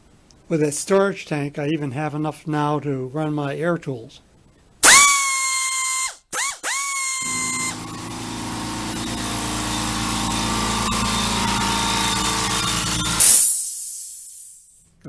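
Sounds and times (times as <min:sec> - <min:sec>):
air compressor motor running: 0:04.8 - 0:14.5
pneumatic air tool whining: 0:04.8 - 0:14.7.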